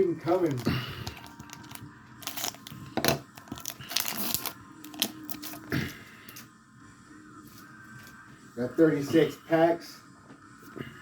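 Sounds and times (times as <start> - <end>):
foil wrapper crinkling and tearing: 0.3 - 5.8.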